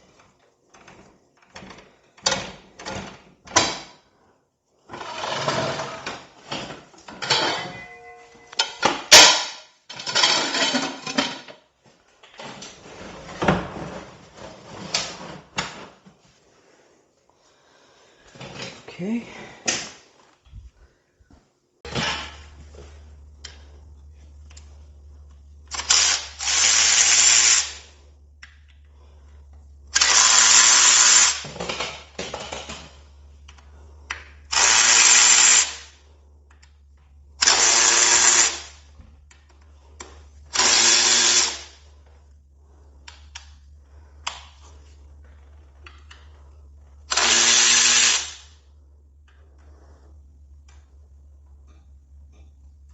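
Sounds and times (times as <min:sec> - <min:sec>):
power tool spinning bolts: 0:25.7 - 0:27.9, 0:29.9 - 0:32.8, 0:34.5 - 0:36.0, 0:37.4 - 0:38.9, 0:40.5 - 0:41.8, 0:47.1 - 0:48.6
tool and parts clicking: 0:25.7 - 0:28.9, 0:30.0 - 0:35.9, 0:37.4 - 0:41.8, 0:47.1 - 0:48.6.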